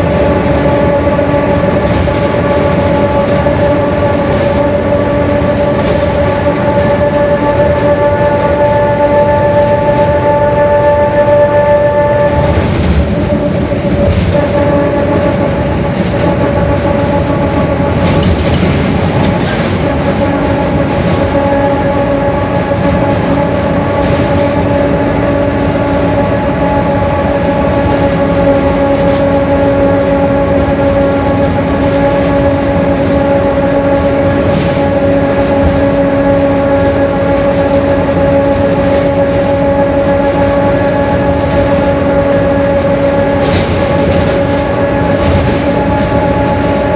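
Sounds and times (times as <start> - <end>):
bus diesel engine running: 0.0 - 46.9.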